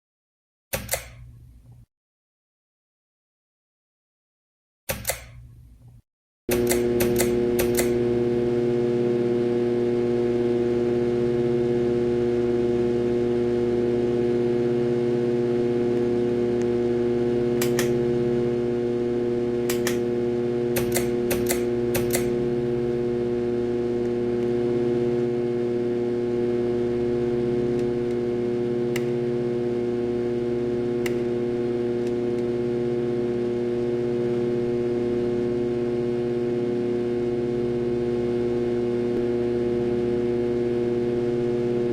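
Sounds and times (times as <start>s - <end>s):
sharp clicks: 0.7s - 1.2s, 4.9s - 5.4s, 6.5s - 8.0s, 17.6s - 18.0s, 19.6s - 20.0s, 20.7s - 22.3s
ceiling fan motor humming: 6.5s - 41.9s.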